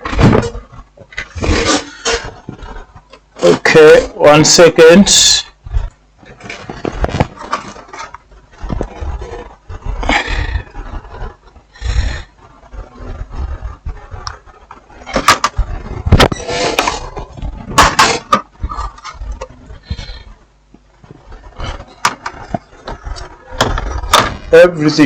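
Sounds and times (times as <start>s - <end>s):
short scrapes of panels: 1.2s - 2.8s, 15.0s - 17.2s.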